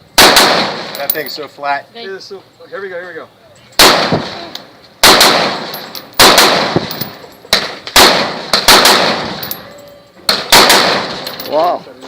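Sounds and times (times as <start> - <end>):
rifle shots echoing: 0.2 - 1.2, 3.8 - 9.7, 10.3 - 11.5.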